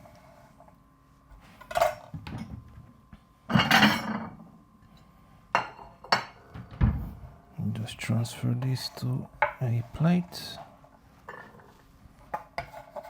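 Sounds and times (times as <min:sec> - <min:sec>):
kitchenware knocking and clinking: 0:03.5 - 0:04.4.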